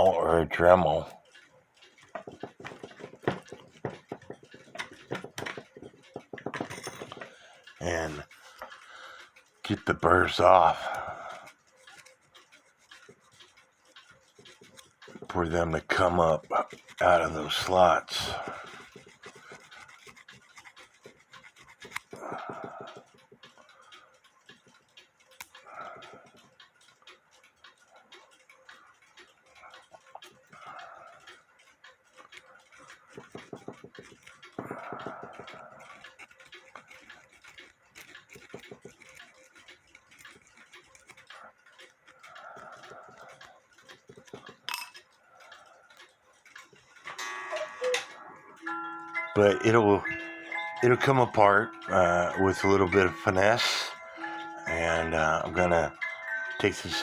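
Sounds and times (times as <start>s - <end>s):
metal clock parts clicking: 0.0s - 57.0s.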